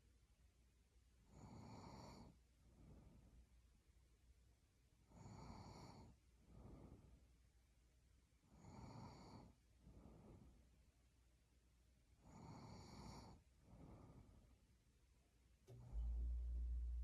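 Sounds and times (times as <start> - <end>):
person snoring softly: 1.3 - 2.4, 5.1 - 7.1, 8.5 - 10.6, 12.2 - 14.4.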